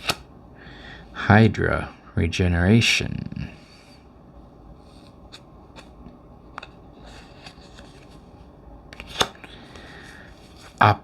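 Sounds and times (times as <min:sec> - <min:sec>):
cards sliding: 0:00.0 - 0:00.3, 0:04.8 - 0:10.8.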